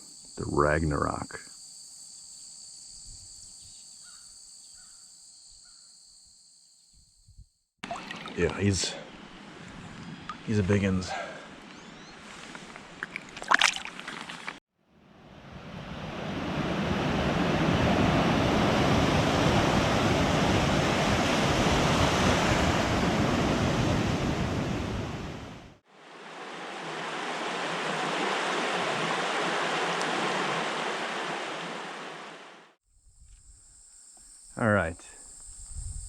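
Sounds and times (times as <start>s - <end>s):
flowing stream: 7.8s - 14.6s, 25.9s - 32.7s
wind buffeting the microphone: 35.5s - 36.0s.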